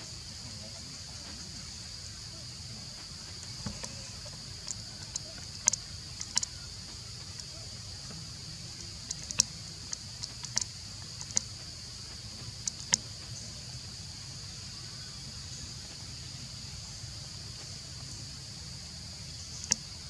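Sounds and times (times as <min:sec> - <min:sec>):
high-pitched insect drone: 0:00.0 - 0:20.0
sharp clicks: 0:03.4 - 0:06.6, 0:08.8 - 0:11.7, 0:12.6 - 0:13.3, 0:19.6 - 0:19.9.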